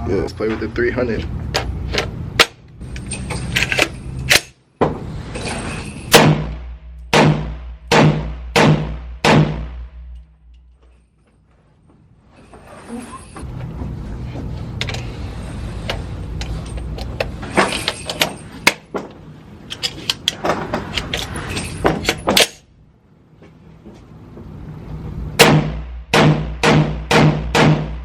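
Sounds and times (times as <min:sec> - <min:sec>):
rifle gunshots: 0:06.1 - 0:09.8, 0:25.4 - 0:28.0.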